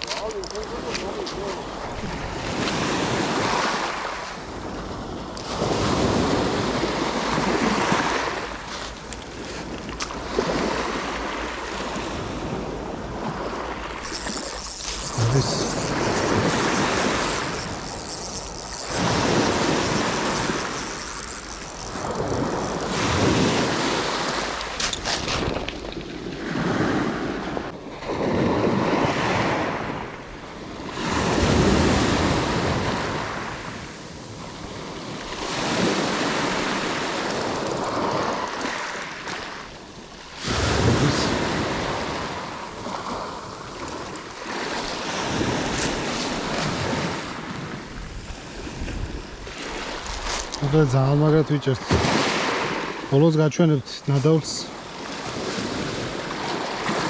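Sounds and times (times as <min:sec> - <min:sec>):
sea waves washing in: 0:00.0 - 0:57.0
wind noise on microphone: 0:14.0 - 0:30.0, 0:40.4 - 0:50.7.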